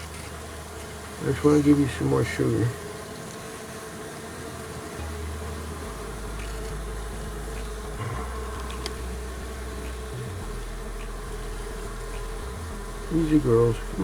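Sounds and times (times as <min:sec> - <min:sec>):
honeybees buzzing: 0:00.0 - 0:14.0
low rumble: 0:05.7 - 0:14.0.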